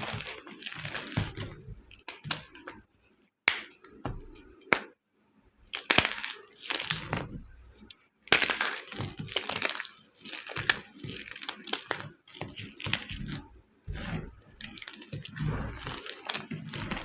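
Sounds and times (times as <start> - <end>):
chalk crumbling with dry crunch: 8.3 - 17.0.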